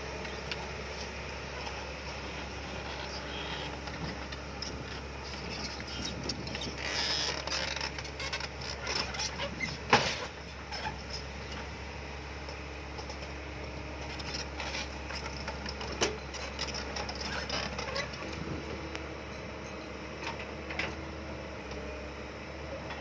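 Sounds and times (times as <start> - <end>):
excavator diesel engine running: 0.0 - 23.0
machine creaking and clanking: 2.8 - 11.7, 14.2 - 18.4.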